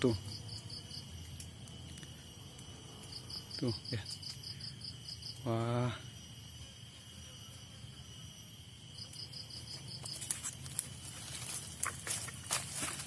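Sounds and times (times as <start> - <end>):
crackles and rustles: 0.0 - 3.2, 9.1 - 13.0
insect chirps: 0.0 - 13.0
insects buzzing: 0.0 - 13.0.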